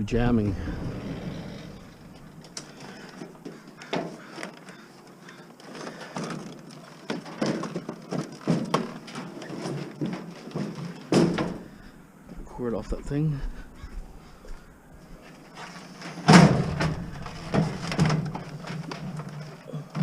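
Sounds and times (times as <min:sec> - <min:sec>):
objects knocking and clattering: 0:02.1 - 0:11.7, 0:16.0 - 0:20.0.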